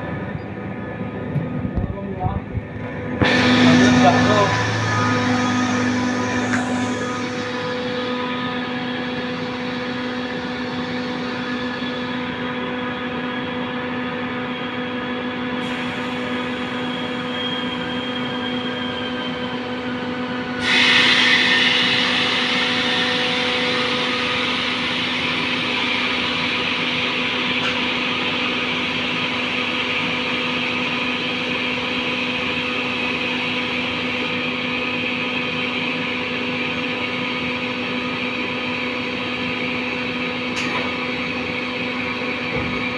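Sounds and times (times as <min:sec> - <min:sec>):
compressor humming: 0:01.1 - 0:12.8
loud hiss: 0:03.2 - 0:08.7.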